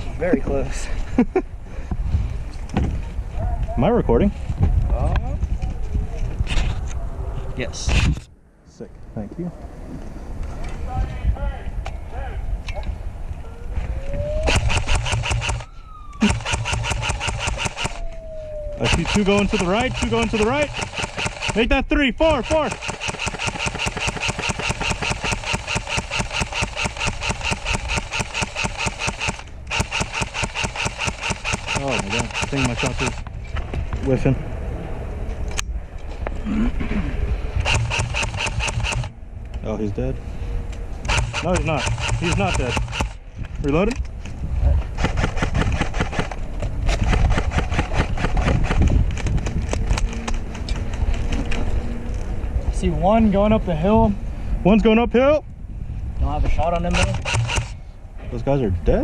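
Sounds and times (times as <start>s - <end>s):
airsoft rifles firing: 14.4s - 18.1s, 18.8s - 33.2s, 37.6s - 39.1s, 41.0s - 43.2s, 56.9s - 57.8s.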